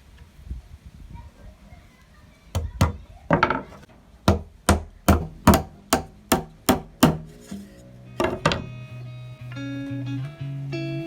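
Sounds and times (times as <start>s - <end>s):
hammer striking nails into wood: 4.3s - 7.3s.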